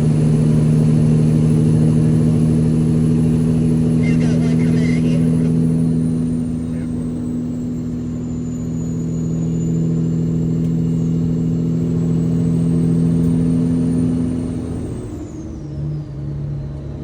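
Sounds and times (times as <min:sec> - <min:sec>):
truck diesel engine running: 0:00.0 - 0:17.0.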